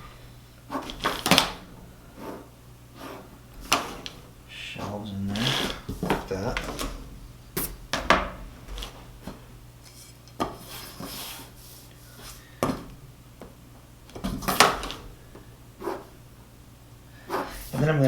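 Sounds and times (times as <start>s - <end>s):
pencil scratching and rubbing: 2.2s - 4.0s, 10.6s - 11.9s, 15.8s - 16.1s, 17.3s - 17.9s.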